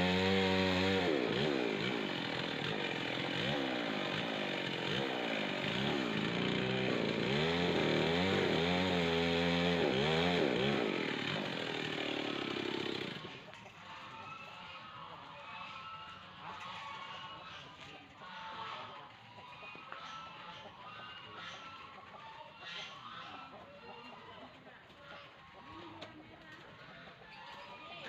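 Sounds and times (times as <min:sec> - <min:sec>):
chainsaw cutting wood: 0:00.0 - 0:13.5.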